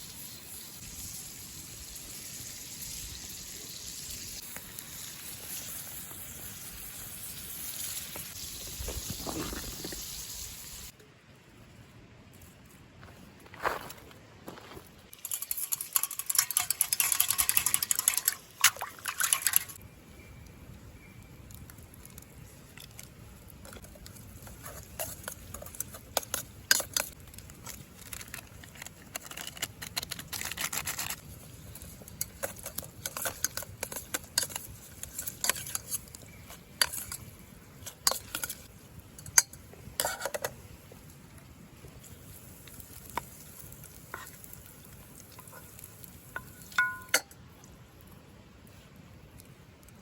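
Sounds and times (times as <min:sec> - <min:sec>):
cookware and utensils clinking: 0:15.2 - 0:19.8, 0:32.1 - 0:40.6, 0:46.3 - 0:47.4.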